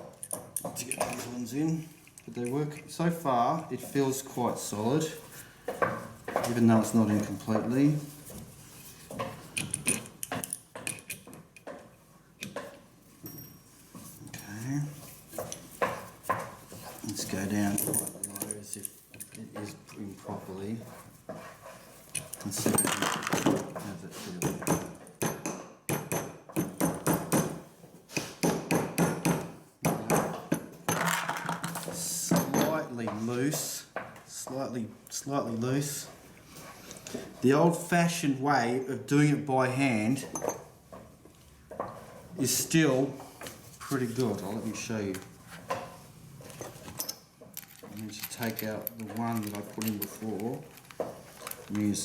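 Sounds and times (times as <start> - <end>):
hammer tapping on metal fixing: 24.4 - 30.9.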